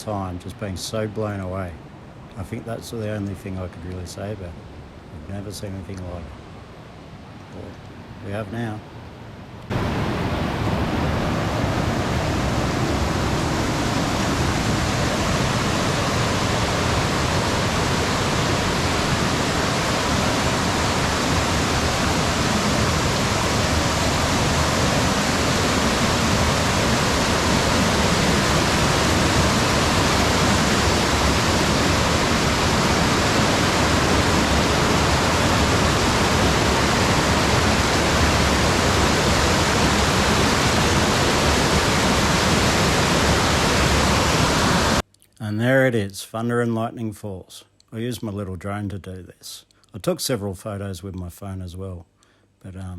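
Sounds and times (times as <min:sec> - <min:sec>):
waterfall rushing: 0:09.7 - 0:45.0.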